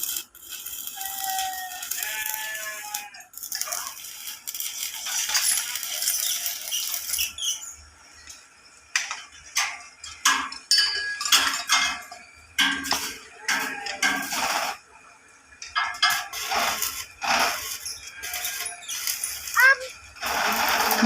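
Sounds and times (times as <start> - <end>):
electric arc welding crackle: 0.0 - 7.8, 12.6 - 14.9, 15.6 - 21.0
metal clinks and knocks: 9.0 - 13.0.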